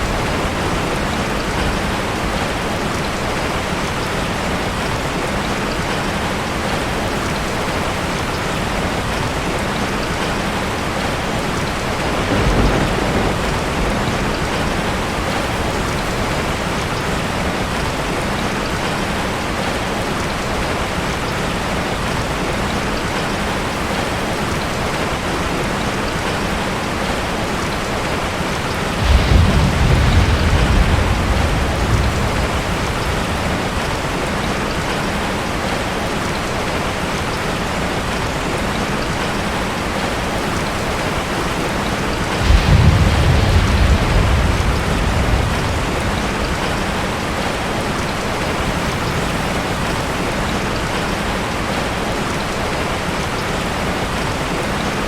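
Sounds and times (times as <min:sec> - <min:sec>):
heavy rain falling: 0:00.0 - 0:55.0
thunder rumble: 0:10.2 - 0:18.0, 0:28.6 - 0:35.8, 0:39.9 - 0:50.3.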